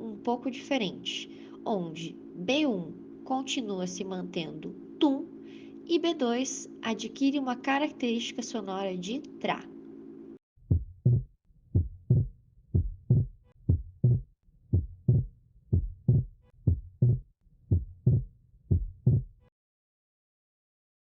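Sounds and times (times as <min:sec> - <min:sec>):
heartbeat lub-dub: 0:10.6 - 0:19.5.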